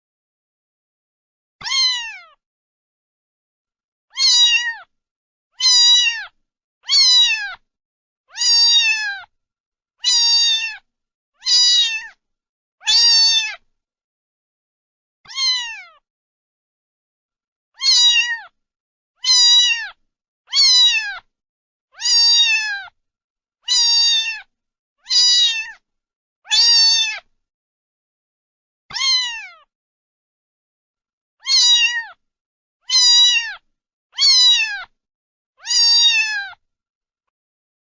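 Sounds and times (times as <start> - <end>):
cat meowing: 1.6 - 2.4, 4.1 - 4.9, 5.6 - 7.6, 8.3 - 9.3, 10.0 - 12.2, 12.8 - 13.6, 15.3 - 16.0, 17.8 - 18.6, 19.2 - 21.3, 22.0 - 23.0, 23.6 - 25.8, 26.5 - 27.3, 28.9 - 29.7, 31.4 - 32.2, 32.8 - 35.0, 35.6 - 36.6.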